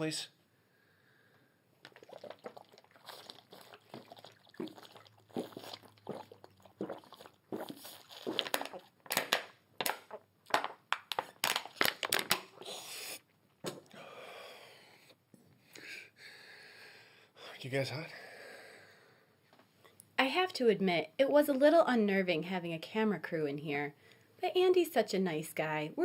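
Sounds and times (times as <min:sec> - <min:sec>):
crinkling and clicking: 0:08.2 - 0:12.6.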